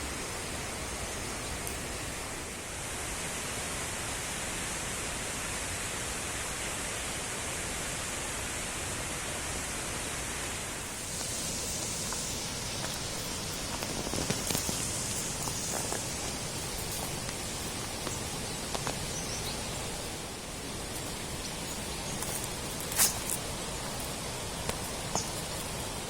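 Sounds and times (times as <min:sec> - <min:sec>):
mountain stream rushing: 0:00.0 - 0:26.0.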